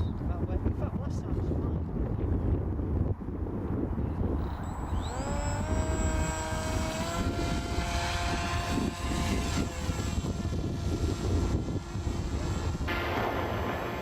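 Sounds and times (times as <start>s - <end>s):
wind rumbling on microphone: 0.0s - 14.0s
model plane motor whine: 4.4s - 14.0s.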